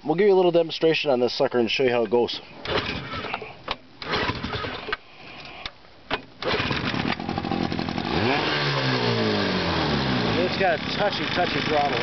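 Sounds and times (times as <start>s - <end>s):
outboard motor cranking and starting: 2.6s - 5.0s, 6.4s - 12.0s.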